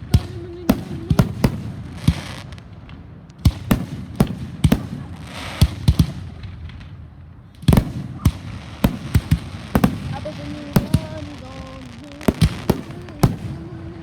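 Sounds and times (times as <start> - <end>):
firework hiss: 0.0 - 2.7, 7.6 - 14.0
fireworks bangs: 0.0 - 14.0.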